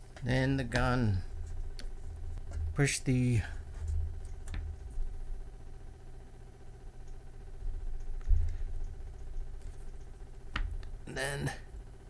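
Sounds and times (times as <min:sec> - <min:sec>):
handling bumps and ticks: 0:00.0 - 0:05.4, 0:07.8 - 0:11.2
faint steady hum: 0:00.0 - 0:12.0.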